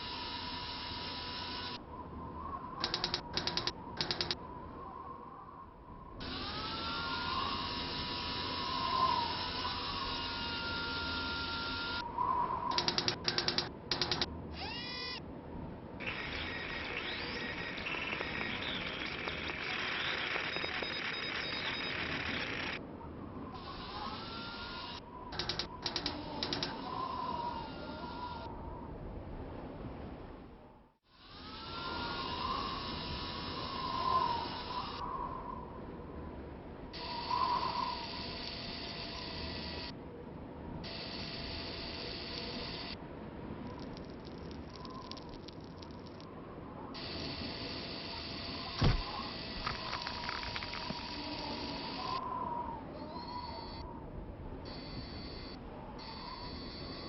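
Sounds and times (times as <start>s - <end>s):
rapid ratchet-like clicking: 0.0s - 1.8s, 2.8s - 4.4s, 12.7s - 14.8s, 23.6s - 26.9s
ratcheting motor and gears: 0.0s - 1.8s, 2.8s - 4.4s, 6.2s - 12.0s, 12.7s - 15.2s, 16.0s - 22.8s, 23.6s - 26.9s, 47.0s - 52.2s
steady mechanical whirring: 0.0s - 1.8s, 2.8s - 4.4s, 6.2s - 12.1s, 12.7s - 15.2s, 16.0s - 22.8s, 23.6s - 28.5s, 31.1s - 35.0s, 37.0s - 40.0s, 40.8s - 43.0s, 47.0s - 52.2s
rising mechanical whir: 12.7s - 15.2s, 16.0s - 22.8s.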